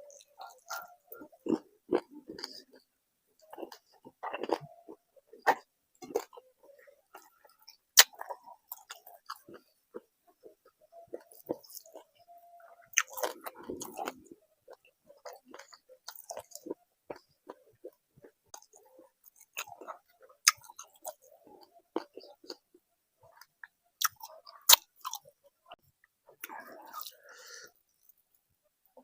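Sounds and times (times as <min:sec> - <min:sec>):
crunching food: 0:00.0 - 0:28.2
close chewing mouth clicks: 0:12.8 - 0:22.6.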